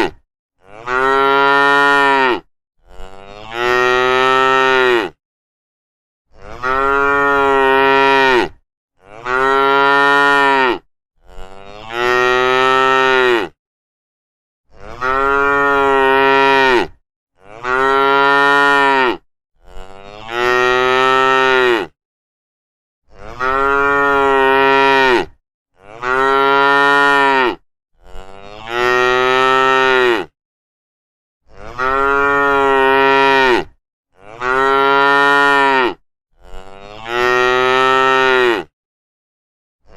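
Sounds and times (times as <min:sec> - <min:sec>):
cows mooing: 0:00.6 - 0:05.2, 0:06.4 - 0:13.6, 0:14.8 - 0:21.9, 0:23.2 - 0:30.3, 0:31.6 - 0:38.7.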